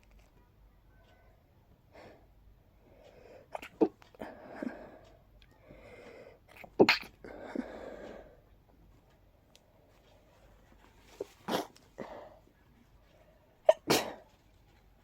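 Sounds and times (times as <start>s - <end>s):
breathy inhales: 4.2s - 6.5s, 7.3s - 8.5s
person sneezing: 11.4s - 12.4s, 13.7s - 14.3s.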